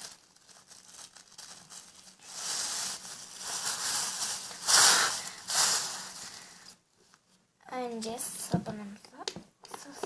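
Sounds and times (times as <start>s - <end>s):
plastic bag rustling: 0.0s - 6.8s.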